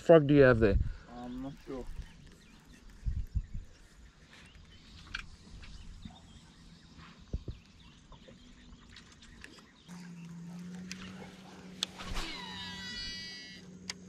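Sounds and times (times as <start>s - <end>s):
birds chirping: 0.0s - 14.0s
steady low hum: 9.7s - 14.0s.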